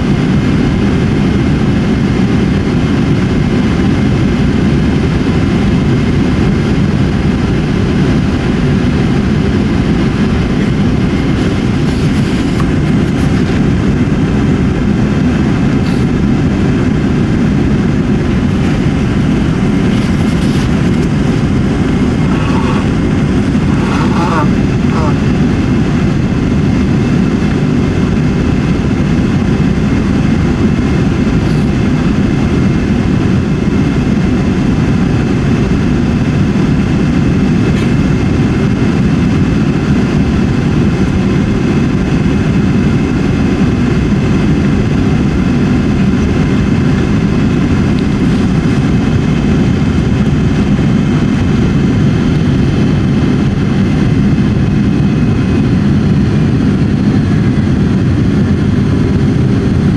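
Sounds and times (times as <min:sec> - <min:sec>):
jet engine and airflow rumble: 0:00.0 - 0:59.9.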